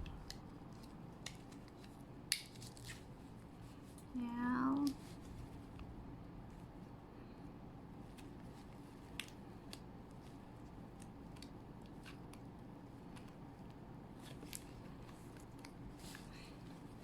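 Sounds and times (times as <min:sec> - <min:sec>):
low room hum: 0:00.0 - 0:17.0
faint clicks and snaps from hands: 0:09.1 - 0:16.2.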